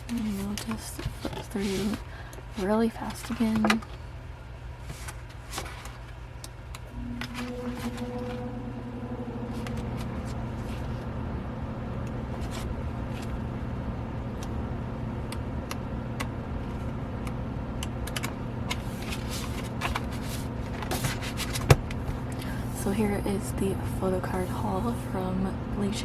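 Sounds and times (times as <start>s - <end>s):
steady low hum: 0.0s - 26.0s
pages flipping: 4.9s - 6.2s, 18.7s - 21.7s.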